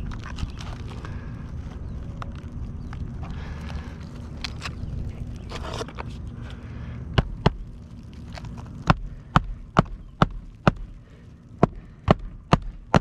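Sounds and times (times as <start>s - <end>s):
hammer driving nail into shingle: 8.8s - 10.9s, 11.6s - 13.0s.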